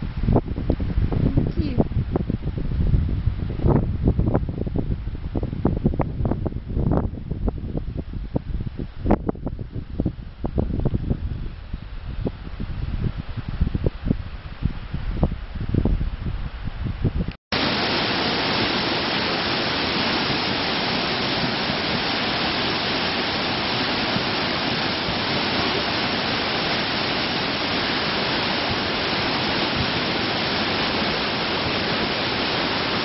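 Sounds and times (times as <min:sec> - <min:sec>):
waterfall rushing: 0:17.5 - 0:33.0.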